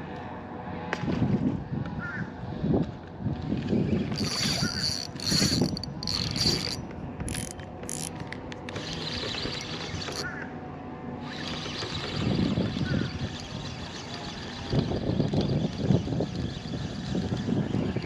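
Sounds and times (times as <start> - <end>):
fishing reel cranking: 4.1 - 8.1, 8.7 - 10.4, 11.2 - 18.0.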